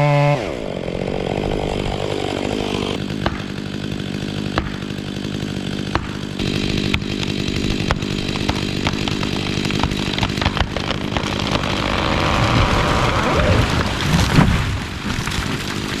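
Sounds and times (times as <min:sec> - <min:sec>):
chainsaw cutting: 0:00.0 - 0:16.0
tree falling with heavy thud: 0:05.9 - 0:16.0.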